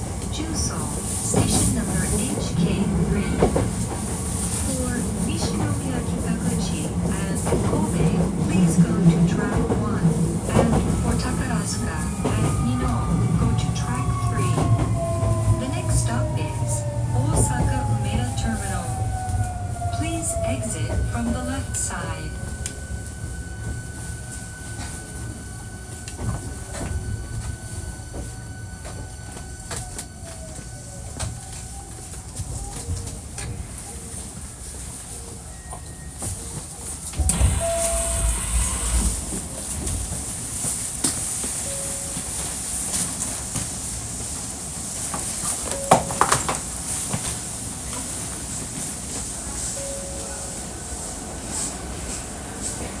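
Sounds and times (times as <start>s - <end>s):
train rumble: 0.0s - 53.0s
faint tone sliding down: 37.2s - 39.5s.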